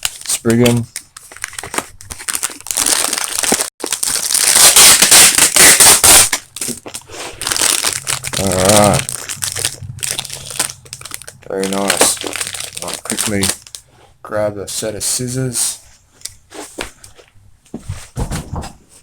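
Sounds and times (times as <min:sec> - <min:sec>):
plastic packaging crinkling: 0:00.0 - 0:13.9.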